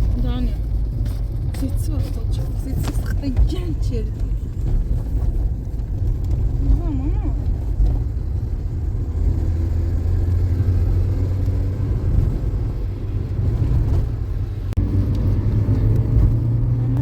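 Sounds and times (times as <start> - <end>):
steady low rumble: 0.0 - 17.0.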